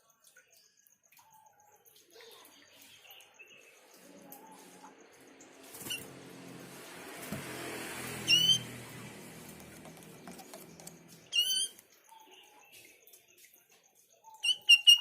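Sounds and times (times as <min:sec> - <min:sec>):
bird warbling calls: 0:08.2 - 0:08.8, 0:10.0 - 0:12.8, 0:14.2 - 0:15.0.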